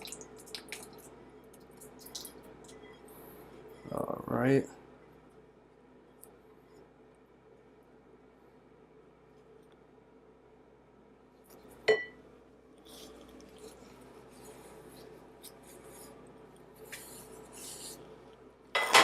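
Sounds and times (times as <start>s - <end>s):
glass clink: 11.9s - 12.2s
utensils clattering: 18.8s - 19.0s.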